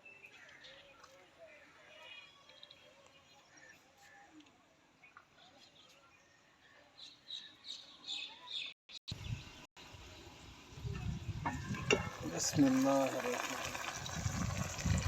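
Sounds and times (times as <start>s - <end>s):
small birds chirping: 0.0s - 11.7s.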